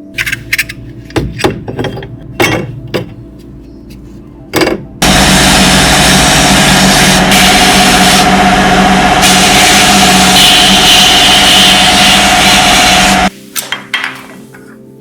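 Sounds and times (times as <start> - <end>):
metal parts clinking: 0.1 - 3.2
power tool motor humming: 5.0 - 13.3.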